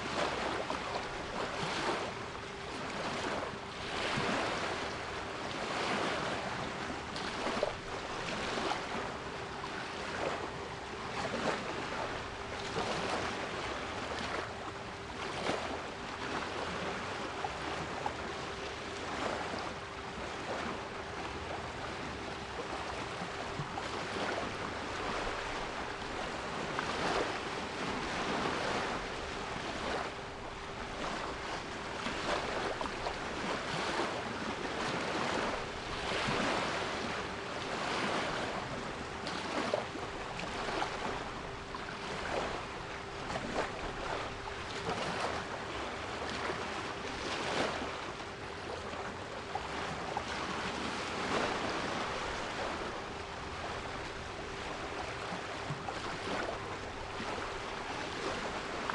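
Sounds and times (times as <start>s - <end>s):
sea waves washing: 19.0s - 58.9s.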